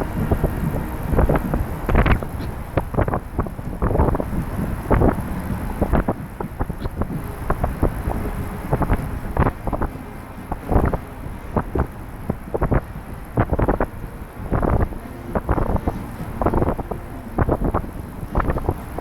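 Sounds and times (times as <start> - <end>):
low steady rumble: 0.0 - 19.0
wind buffeting microphone: 0.0 - 19.0.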